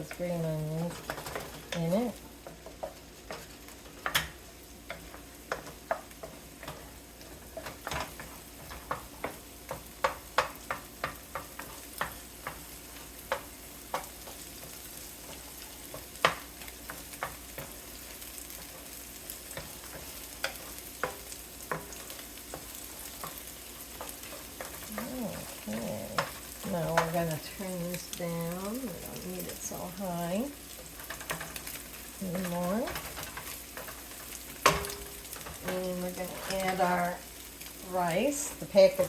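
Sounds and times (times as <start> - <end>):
eggs sizzling in a pan: 0.0 - 39.0
utensil scraping a pan: 30.7 - 37.2.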